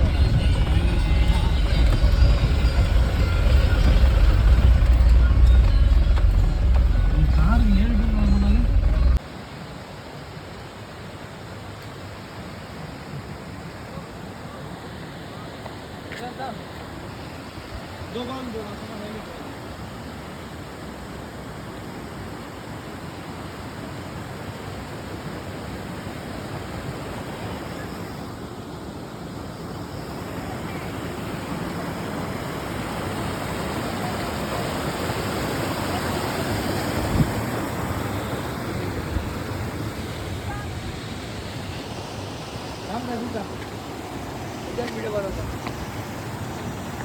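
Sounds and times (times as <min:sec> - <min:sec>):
waterfall rushing: 0:00.0 - 0:09.4, 0:30.0 - 0:47.0.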